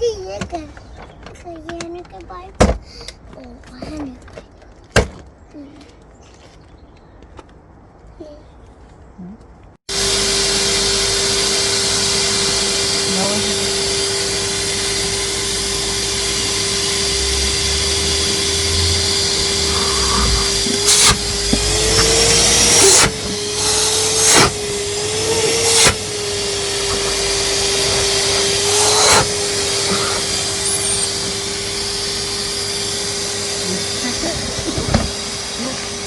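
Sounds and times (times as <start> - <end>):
loud rushes of noise: 9.9 - 36.0
vacuum cleaner running: 9.9 - 36.0.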